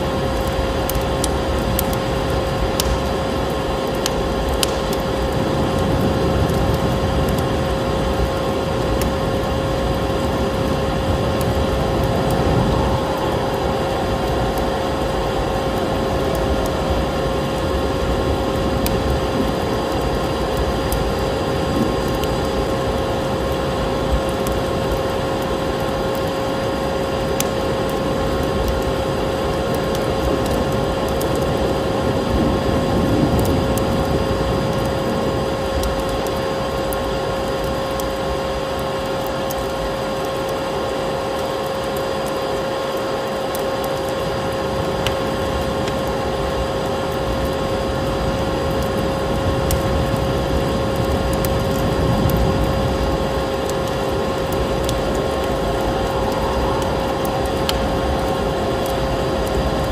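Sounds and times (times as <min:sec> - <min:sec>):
faint crackling clicks: 0:00.3 - 0:03.2, 0:03.8 - 0:07.5, 0:27.3 - 0:28.9, 0:29.5 - 0:31.6, 0:35.7 - 0:40.6, 0:48.6 - 0:59.9.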